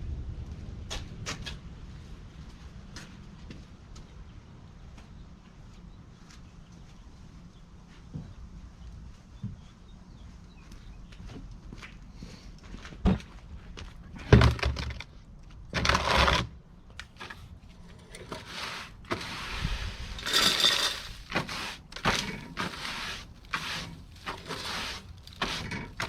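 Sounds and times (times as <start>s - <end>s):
brush sweeping workbench: 17.2s - 26.0s.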